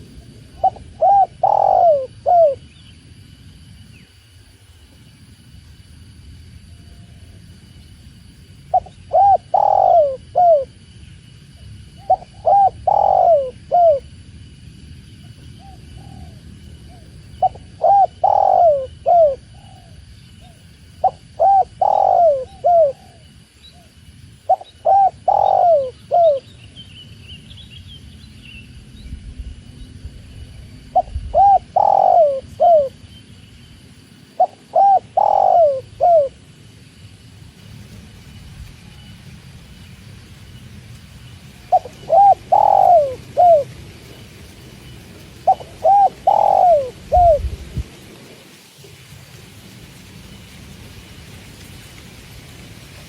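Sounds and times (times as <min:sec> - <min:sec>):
dove cooing: 0:00.2 - 0:02.6, 0:08.7 - 0:10.8, 0:12.0 - 0:14.1, 0:15.6 - 0:23.9, 0:24.5 - 0:26.5, 0:30.9 - 0:33.0, 0:34.4 - 0:36.4, 0:41.7 - 0:43.8, 0:45.4 - 0:47.6.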